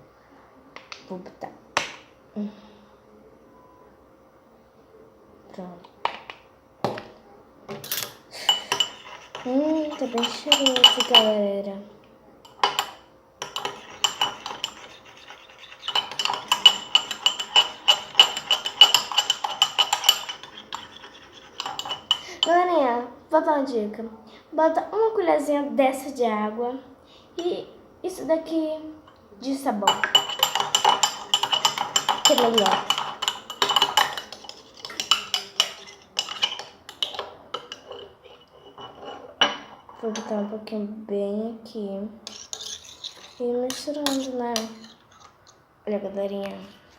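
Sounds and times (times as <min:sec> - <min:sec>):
spoon clinking against bowl: 0:08.5 - 0:11.4, 0:12.5 - 0:22.6, 0:29.8 - 0:39.7.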